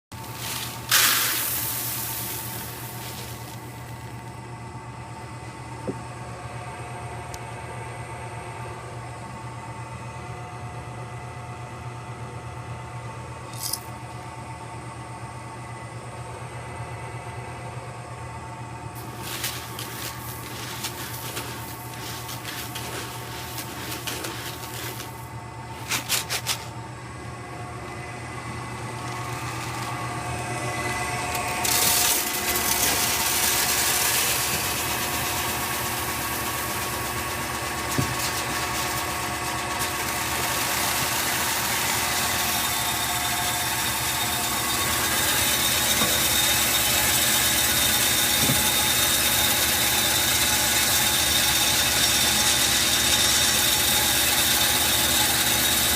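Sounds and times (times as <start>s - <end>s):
sorting machine humming: 0.1s - 10.3s, 12.2s - 55.9s.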